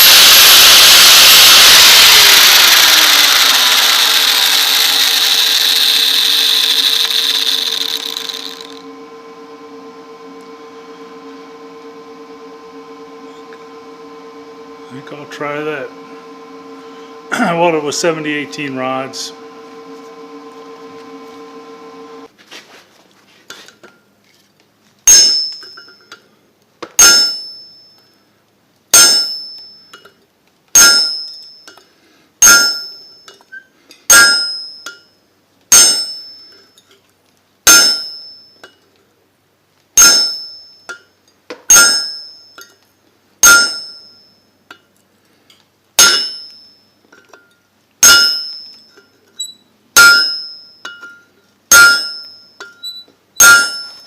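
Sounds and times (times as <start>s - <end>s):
hammer striking steel: 32.4s - 33.0s, 41.7s - 42.3s, 43.4s - 44.2s, 46.0s - 46.6s, 47.4s - 49.0s, 50.0s - 52.8s, 53.4s - 54.0s.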